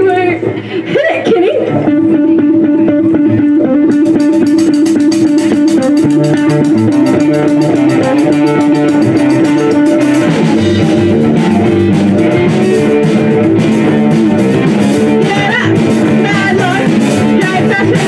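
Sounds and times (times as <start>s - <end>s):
electric guitar: 0.0s - 18.0s
bass guitar: 1.6s - 18.0s
steady drum beat: 3.8s - 18.0s.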